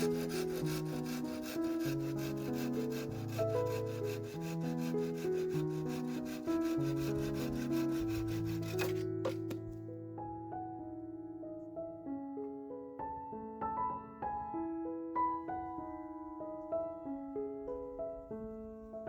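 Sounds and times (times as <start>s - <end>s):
hand saw cutting wood: 0.0s - 9.6s
soft piano music: 0.0s - 19.0s.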